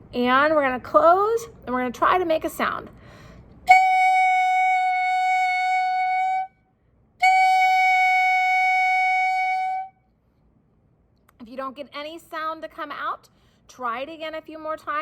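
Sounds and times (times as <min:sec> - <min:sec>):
clarinet mouthpiece long tones: 0:03.6 - 0:10.1.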